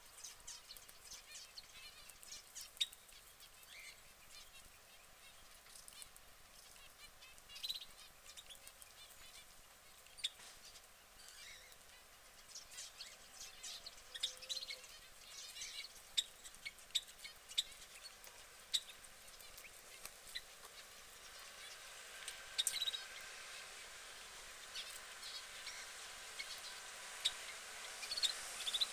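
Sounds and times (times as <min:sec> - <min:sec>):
canary chirping: 0:10.2 - 0:28.9.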